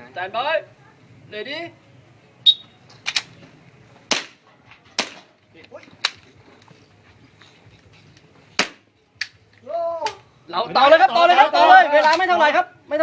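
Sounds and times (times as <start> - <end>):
bb gun shots: 4.1 - 4.4, 5.0 - 5.4, 8.6 - 8.9.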